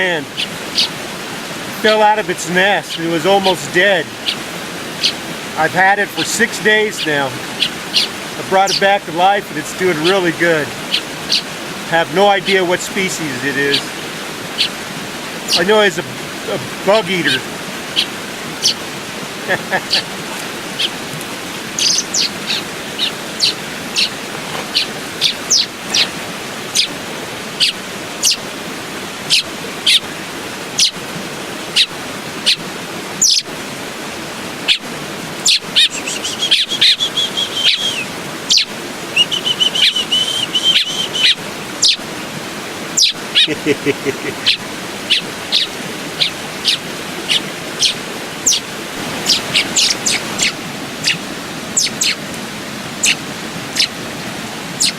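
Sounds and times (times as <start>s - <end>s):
bird chirping: 0.0s - 1.0s, 2.8s - 13.9s, 14.5s - 14.8s, 15.5s - 16.0s, 16.8s - 18.9s, 19.5s - 20.1s, 20.7s - 21.0s, 21.7s - 27.0s, 27.6s - 28.4s, 29.3s - 30.1s, 30.8s - 31.0s, 31.7s - 32.6s, 33.2s - 33.5s, 34.7s - 42.0s, 43.0s - 52.2s, 53.0s - 54.0s
creek water rushing: 0.0s - 54.9s.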